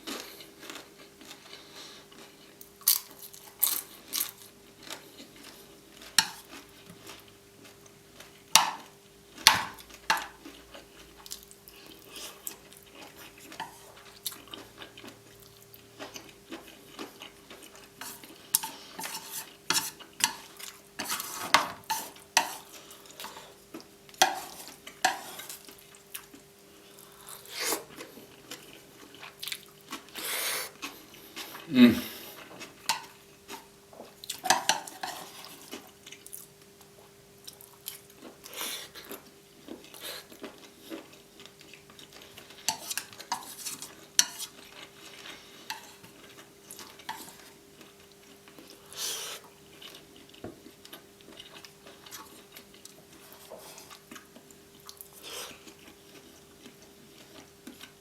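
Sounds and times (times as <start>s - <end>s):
chewing: 0.0s - 8.4s, 9.4s - 58.0s
cutlery scraping a plate: 18.0s - 23.4s, 24.2s - 25.6s, 34.4s - 35.8s, 42.4s - 46.1s.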